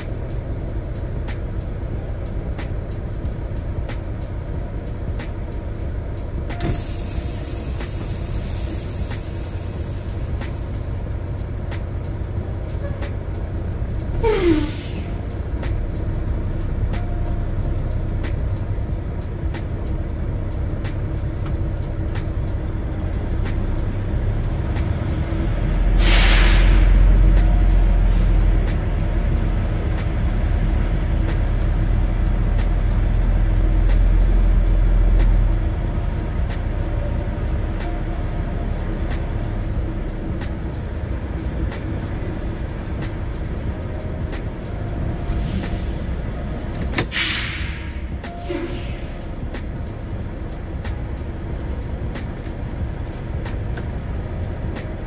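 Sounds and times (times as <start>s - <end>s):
diesel engine running: 0.0s - 55.0s
hiss: 6.6s - 11.0s, 14.2s - 15.2s, 24.7s - 28.8s, 45.2s - 49.3s.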